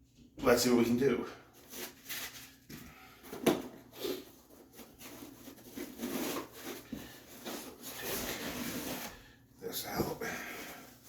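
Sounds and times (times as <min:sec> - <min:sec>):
cardboard packing rubbing and sliding: 0:04.0 - 0:09.3.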